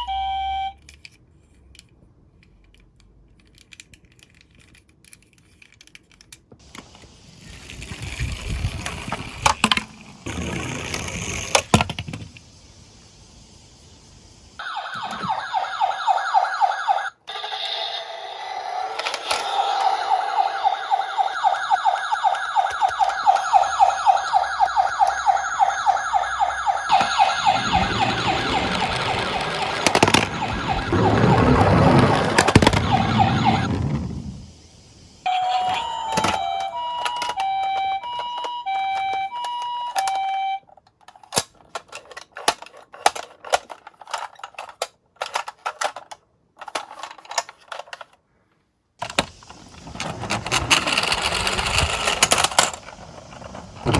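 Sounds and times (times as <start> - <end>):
toy siren warbling: 0.0 - 0.8, 14.6 - 33.9, 35.3 - 40.6
two-note electronic beeping: 0.0 - 0.8, 35.3 - 40.6
rolling rumble: 6.6 - 15.8, 18.6 - 36.8, 49.0 - 53.9.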